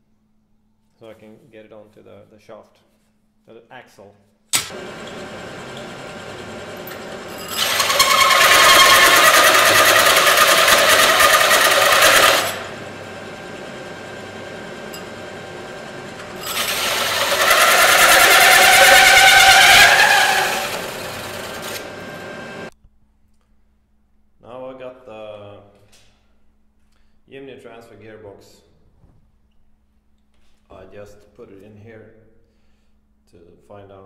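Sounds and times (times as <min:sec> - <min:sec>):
power saw cutting steel: 0:04.6 - 0:22.7.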